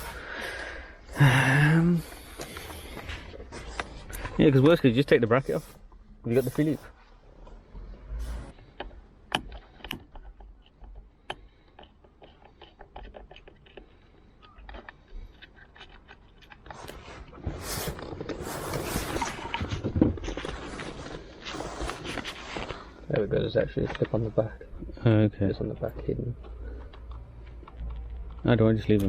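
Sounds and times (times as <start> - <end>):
scraping and rustling: 11.5 - 24.4.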